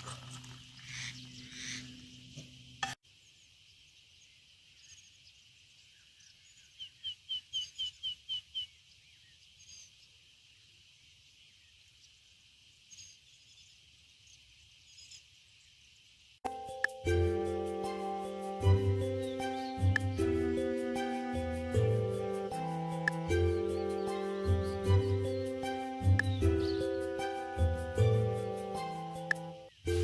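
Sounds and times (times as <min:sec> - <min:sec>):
faint bird chirps: 0:00.3 - 0:16.4
bird calling sharp notes: 0:16.5 - 0:30.0.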